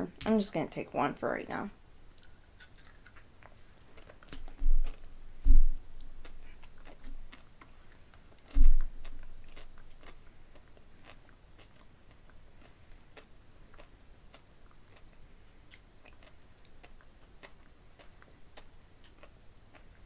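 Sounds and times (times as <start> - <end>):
person chewing crunchy candy: 2.1 - 5.1, 6.0 - 20.0
thuds: 8.5 - 8.9.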